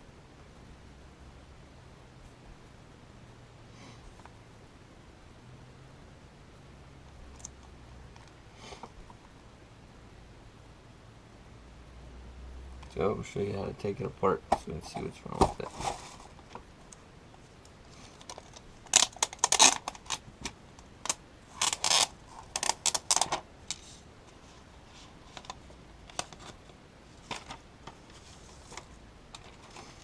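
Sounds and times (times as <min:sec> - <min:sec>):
small objects clicking and rustling: 0:17.9 - 0:24.0, 0:24.9 - 0:30.0.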